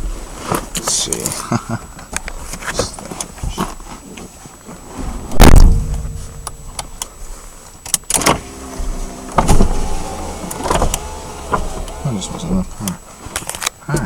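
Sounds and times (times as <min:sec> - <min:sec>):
car engine starting: 0:05.1 - 0:13.0.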